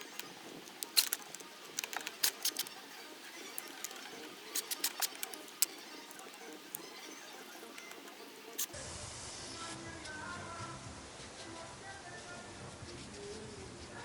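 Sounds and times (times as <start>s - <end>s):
tools and metal parts clicking: 0.0s - 8.7s.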